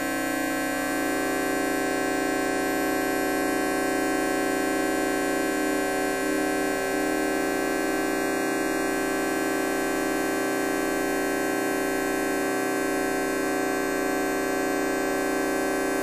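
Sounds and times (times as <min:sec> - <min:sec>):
time-stretched fart drone: 0:00.7 - 0:13.4.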